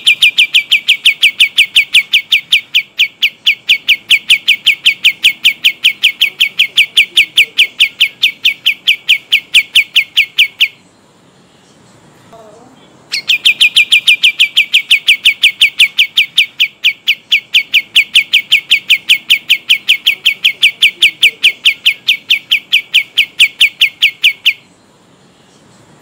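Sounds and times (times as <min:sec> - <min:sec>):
songbird singing rapid whistles: 0:00.0 - 0:12.1, 0:12.9 - 0:26.0.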